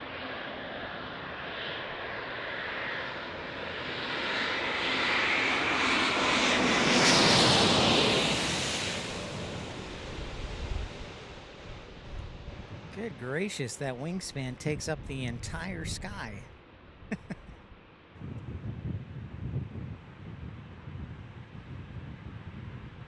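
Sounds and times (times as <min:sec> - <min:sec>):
jet plane passing overhead: 0:00.0 - 0:16.4.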